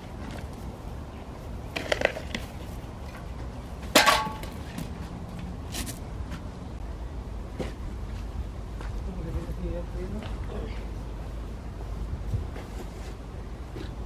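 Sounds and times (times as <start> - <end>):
loud metal clang: 4.0 - 4.6.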